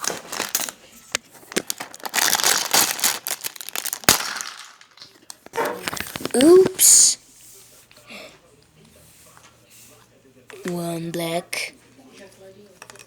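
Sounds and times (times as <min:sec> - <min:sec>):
small pieces clicking: 0:00.0 - 0:00.8, 0:01.5 - 0:05.2
plastic packaging crinkling: 0:00.0 - 0:07.0.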